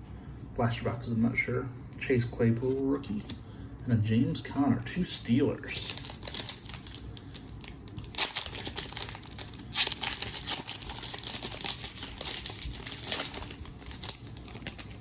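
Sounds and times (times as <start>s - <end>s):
wrapper tearing and crinkling: 5.7s - 15.0s.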